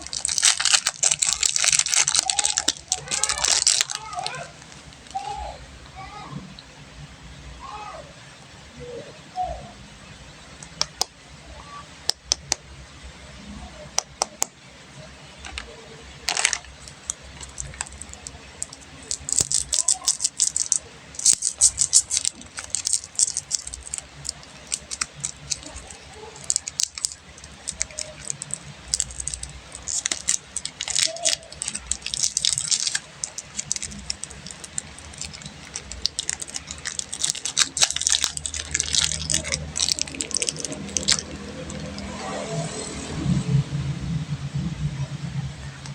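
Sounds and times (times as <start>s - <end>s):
plastic wrappers crinkling: 0.0s - 5.6s, 10.5s - 11.1s, 15.2s - 42.4s.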